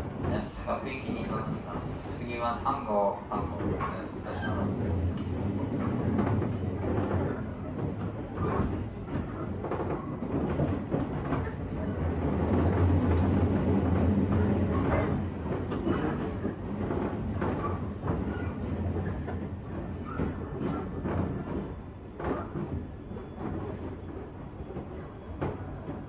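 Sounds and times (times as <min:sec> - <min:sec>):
train motor and wheel rumble: 0:00.0 - 0:26.0.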